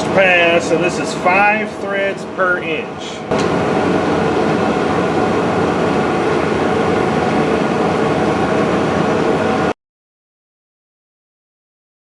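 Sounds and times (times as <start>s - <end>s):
metal lathe running: 3.3s - 9.7s.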